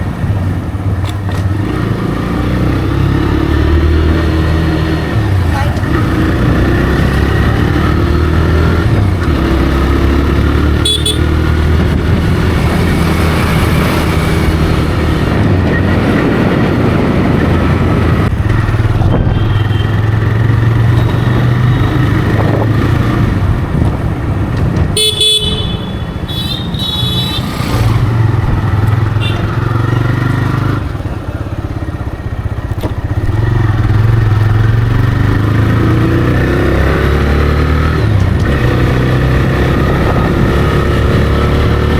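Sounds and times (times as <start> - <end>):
motorcycle engine running: 0.0 - 41.9
vehicle horn honking: 10.8 - 11.4, 19.2 - 20.0, 25.0 - 27.7, 29.2 - 29.6.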